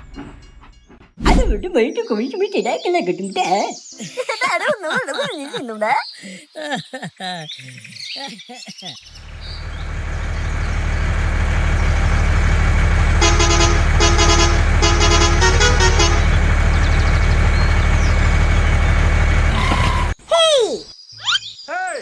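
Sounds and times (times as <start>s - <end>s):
truck engine rumbling: 9.0s - 20.2s
truck horn toots: 9.2s - 20.2s.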